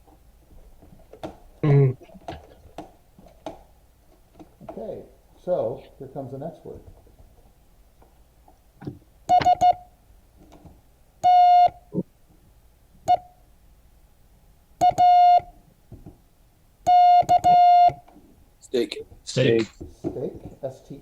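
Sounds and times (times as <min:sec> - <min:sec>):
buzzy morse code beeps: 0:09.3 - 0:09.8, 0:11.2 - 0:12.0, 0:14.8 - 0:15.5, 0:16.9 - 0:18.0.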